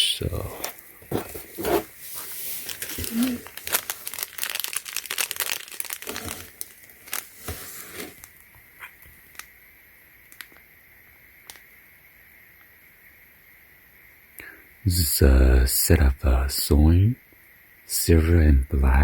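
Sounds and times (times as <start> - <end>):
packaging crinkling and rustling: 0.6 - 9.5.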